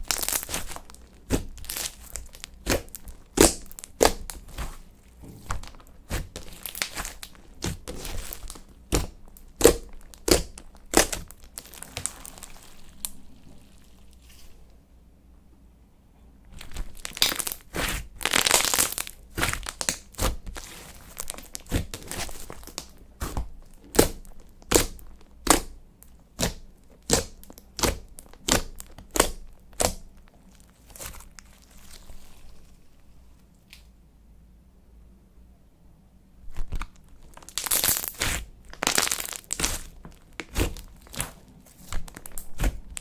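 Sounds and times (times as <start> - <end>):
slime sticky pops and crackles: 5.6 - 13.2, 16.6 - 25.8, 26.4 - 30.1, 36.6 - 43.0.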